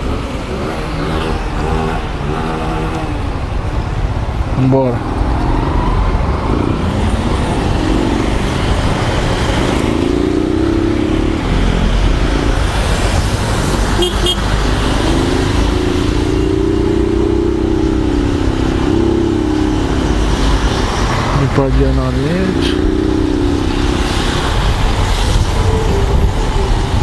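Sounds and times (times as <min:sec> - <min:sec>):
vehicle engine accelerating: 0:00.0 - 0:04.2, 0:05.0 - 0:27.0
road and wind noise: 0:00.0 - 0:27.0.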